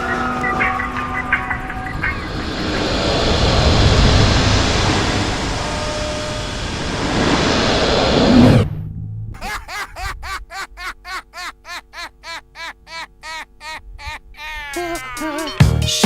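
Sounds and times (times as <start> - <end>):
thunder rumbling: 0.0 - 9.4.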